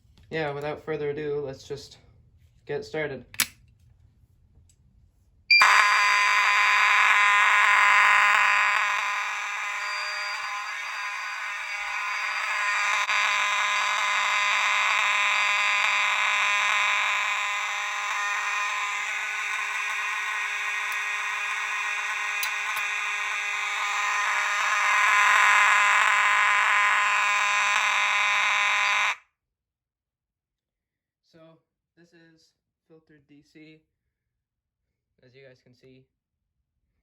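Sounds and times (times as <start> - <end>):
fire alarm horn buzzing: 5.5 - 29.2.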